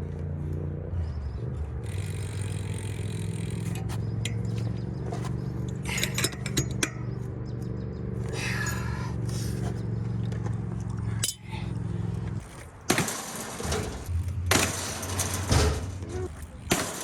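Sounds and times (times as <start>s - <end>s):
bike metal clicks and clinks: 1.7s - 17.0s
metal parts clattering: 3.5s - 7.2s, 12.4s - 17.0s.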